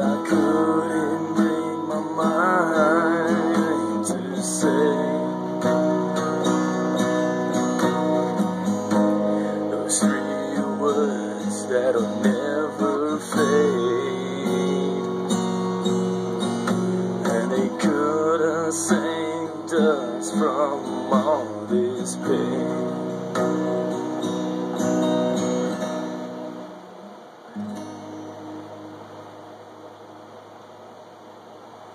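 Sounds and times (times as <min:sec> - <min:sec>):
wordless vocal: 0:00.0 - 0:06.5, 0:09.2 - 0:15.1, 0:17.2 - 0:23.9
acoustic guitar strumming: 0:00.0 - 0:31.9.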